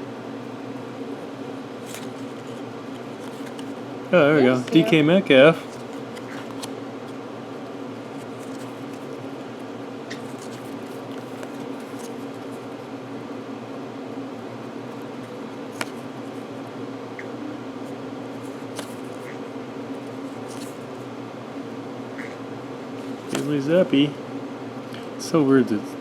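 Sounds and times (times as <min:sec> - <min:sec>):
steady low hum: 0:00.0 - 0:26.0
trading cards being flipped: 0:01.9 - 0:03.8, 0:05.6 - 0:06.7, 0:08.2 - 0:09.2, 0:10.1 - 0:12.6, 0:15.7 - 0:16.1, 0:18.4 - 0:19.4, 0:20.3 - 0:20.8, 0:23.1 - 0:23.6
light clicks of cards: 0:23.3 - 0:23.5.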